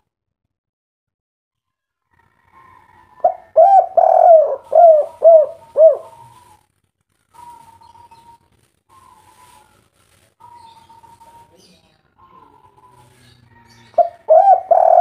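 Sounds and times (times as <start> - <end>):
dove cooing: 3.0 - 6.6, 10.4 - 11.5, 12.2 - 15.0
faint thin whistle-like tones: 6.0 - 11.7.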